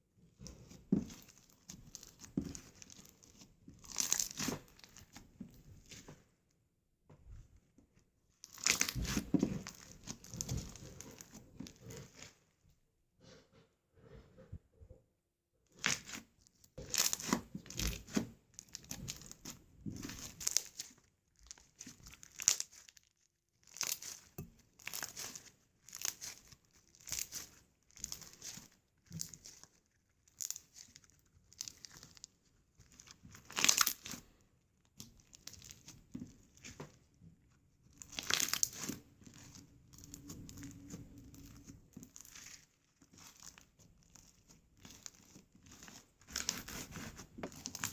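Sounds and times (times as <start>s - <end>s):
slime squelching and crackling: 0.2s - 6.3s, 8.3s - 12.4s, 15.7s - 47.9s.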